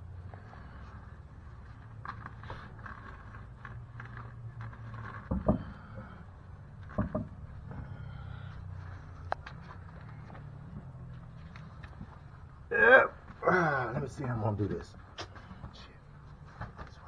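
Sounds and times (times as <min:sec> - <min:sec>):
knocks of wheel and tools: 0:05.2 - 0:06.1, 0:06.8 - 0:07.8.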